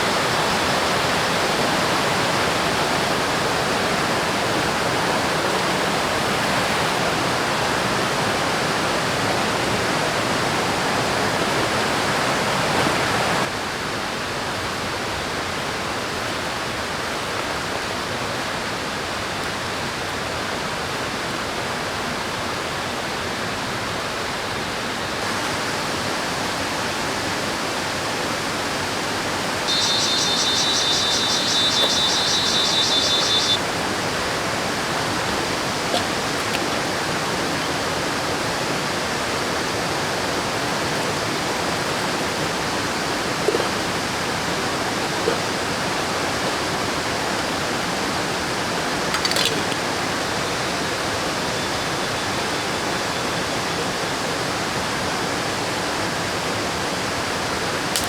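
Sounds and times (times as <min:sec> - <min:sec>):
rushing river water: 0:00.0 - 0:58.0
high-pitched trill: 0:29.7 - 0:33.6.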